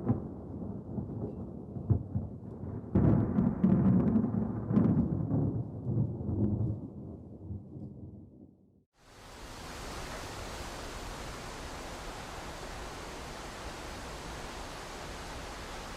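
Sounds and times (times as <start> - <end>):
thunder rumbling and clapping: 0.0 - 8.0.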